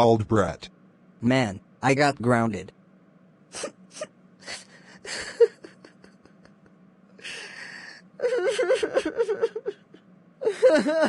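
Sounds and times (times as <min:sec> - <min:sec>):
child crying: 0:08.2 - 0:09.8, 0:10.4 - 0:11.0.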